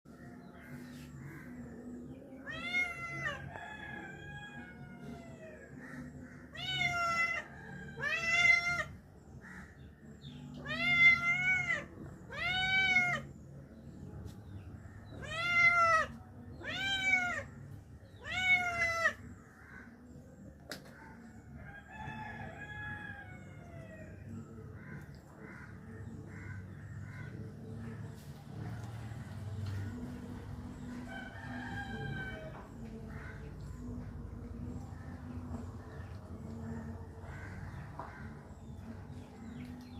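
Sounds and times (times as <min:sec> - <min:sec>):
cat meowing: 0:02.4 - 0:03.5, 0:06.5 - 0:09.0, 0:10.6 - 0:13.3, 0:15.1 - 0:17.5, 0:18.2 - 0:19.3.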